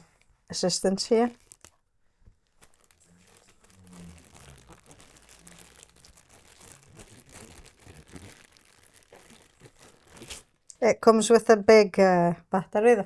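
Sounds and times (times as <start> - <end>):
packaging crinkling and rustling: 1.0 - 10.6.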